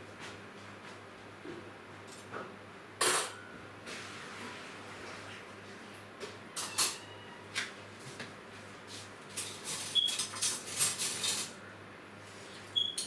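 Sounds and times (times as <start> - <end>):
dishes and cutlery clattering: 3.0 - 3.4, 6.6 - 7.1, 9.3 - 11.6.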